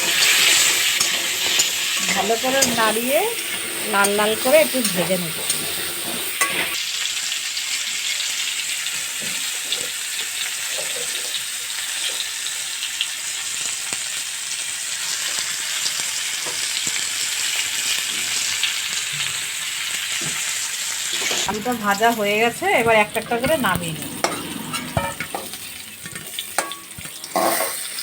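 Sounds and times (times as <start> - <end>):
potatoes frying in oil: 0.0 - 28.0
light stirring: 21.3 - 27.5.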